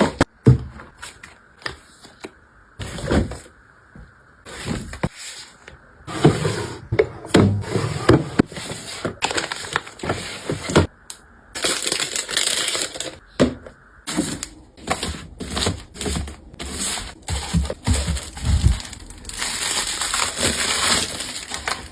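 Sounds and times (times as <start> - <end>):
packaging crinkling: 9.2 - 10.1, 11.6 - 13.2, 14.1 - 21.9
items clicking and knocking: 11.6 - 21.9.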